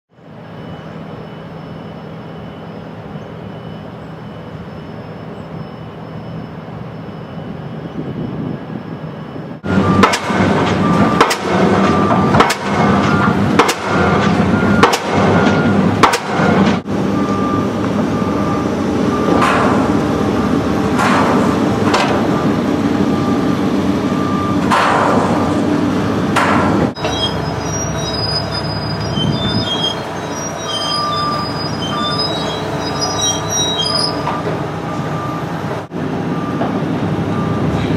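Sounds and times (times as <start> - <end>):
machinery rumble: 0.1 - 37.9
heavy hammer blows: 9.6 - 16.9, 19.2 - 22.6, 24.6 - 34.6.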